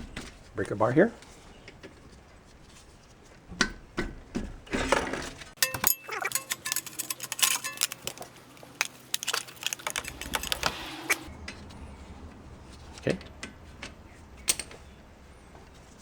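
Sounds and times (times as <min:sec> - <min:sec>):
short metallic ring: 0:05.6 - 0:07.9.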